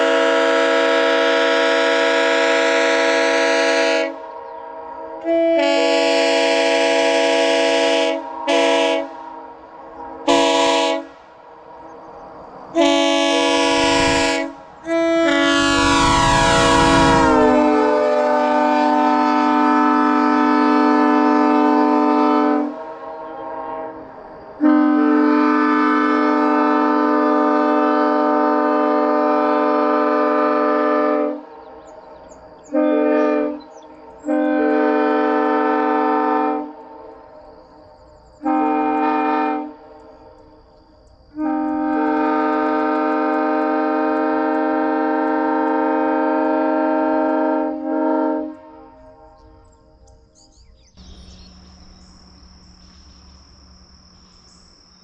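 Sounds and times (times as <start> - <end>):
train horn chord blasts: 0.0 - 4.3, 5.2 - 9.4, 10.2 - 11.3, 12.8 - 31.5, 32.7 - 37.2, 38.4 - 40.0, 41.4 - 50.0.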